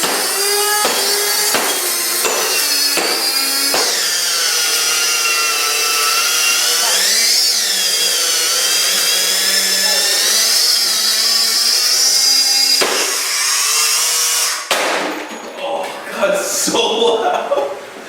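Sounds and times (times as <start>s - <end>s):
sharp knock: 0.0s - 4.1s
vacuum cleaner motor whining: 0.0s - 14.5s.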